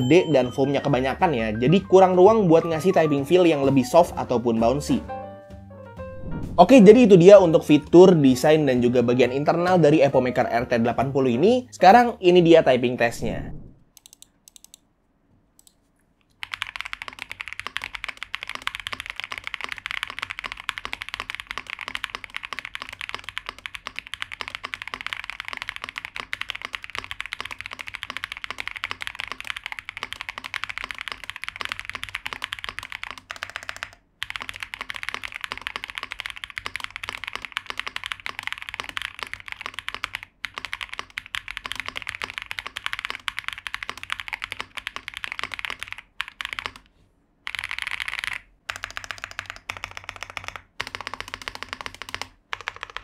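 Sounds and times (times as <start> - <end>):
mechanical keyboard typing: 16.4 - 46.9, 47.5 - 53.0.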